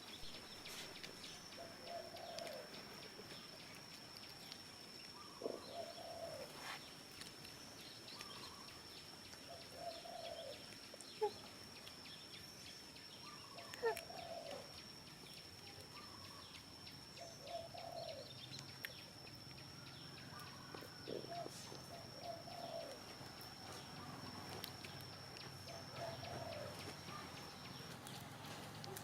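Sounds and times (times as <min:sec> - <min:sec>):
faint animal calls: 0:13.2 - 0:14.8, 0:19.6 - 0:29.0.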